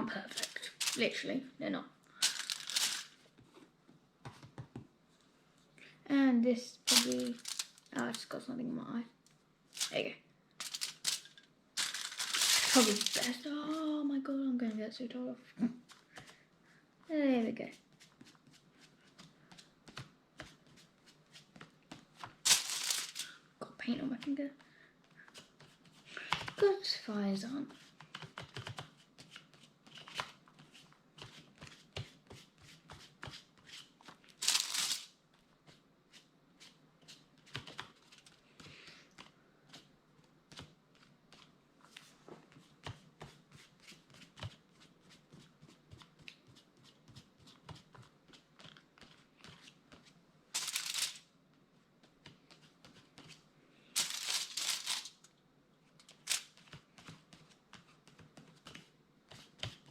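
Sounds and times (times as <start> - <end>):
paper rustling: 0.3 - 1.2, 2.2 - 3.6, 6.9 - 8.4, 9.8 - 10.0, 10.6 - 13.9, 22.2 - 23.4, 33.2 - 35.1, 50.6 - 51.2, 54.0 - 55.2, 56.0 - 58.0.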